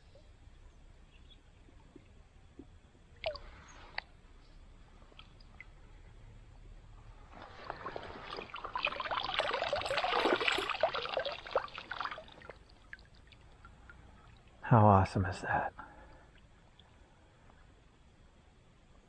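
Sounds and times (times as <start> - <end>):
water splashing and sloshing: 1.6 - 14.6.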